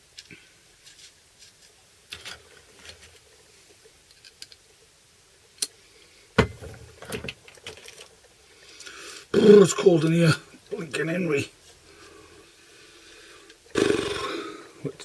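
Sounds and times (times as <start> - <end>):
clicks and rustles of handling: 0.0 - 4.9, 5.5 - 9.3.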